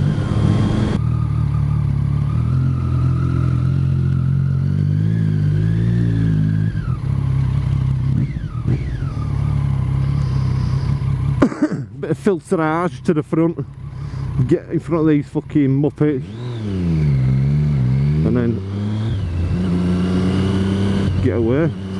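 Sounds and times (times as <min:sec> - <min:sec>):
motorcycle engine revving: 0:00.0 - 0:21.9.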